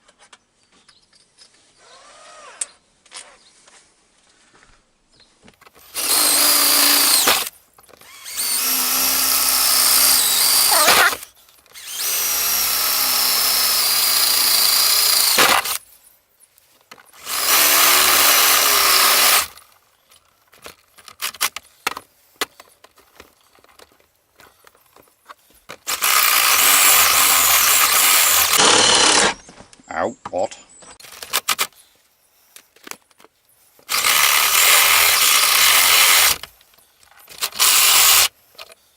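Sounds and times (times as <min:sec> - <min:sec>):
power drill drilling plastic: 0:05.8 - 0:15.8, 0:17.2 - 0:19.6, 0:25.8 - 0:29.4, 0:33.8 - 0:36.5, 0:37.3 - 0:38.4.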